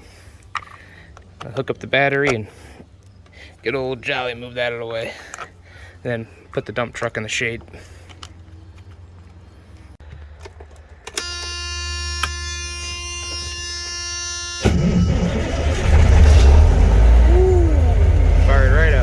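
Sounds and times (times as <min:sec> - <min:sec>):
truck warning buzzer: 0:11.2 - 0:17.3
truck engine starting and running: 0:14.1 - 0:19.0.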